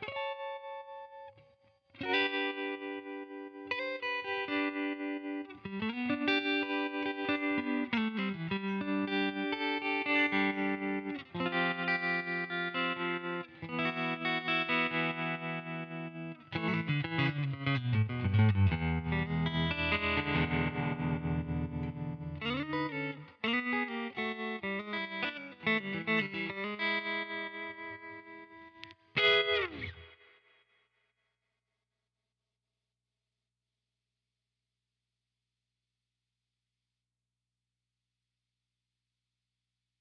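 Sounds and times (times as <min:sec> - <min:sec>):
electric guitar playing: 0:02.0 - 0:30.4.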